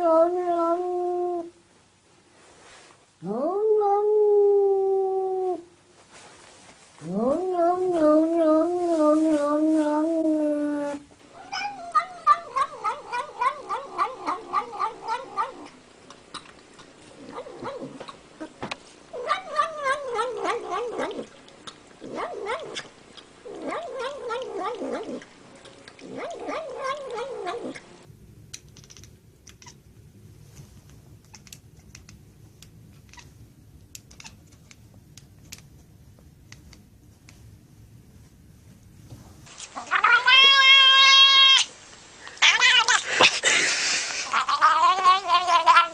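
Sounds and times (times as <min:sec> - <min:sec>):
cat yowling: 0:09.8 - 0:15.7, 0:39.8 - 0:41.7, 0:42.4 - 0:43.2, 0:44.3 - 0:45.9
cat chirping: 0:11.4 - 0:15.7, 0:28.7 - 0:29.8, 0:32.9 - 0:33.4, 0:34.0 - 0:34.7
low hum: 0:27.7 - 0:39.5
faint clicks: 0:28.5 - 0:29.8, 0:30.8 - 0:37.4.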